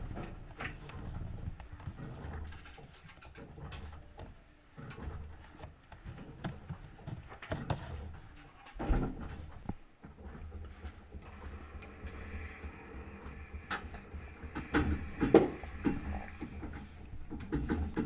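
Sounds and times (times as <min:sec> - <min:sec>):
washing machine motor hum: 0:00.0 - 0:18.0
knocks and clicks: 0:08.8 - 0:18.0.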